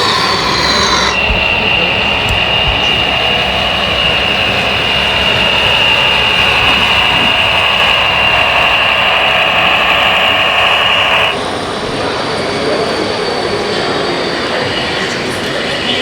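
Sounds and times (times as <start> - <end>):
electric motor whine: 0.0 - 11.4.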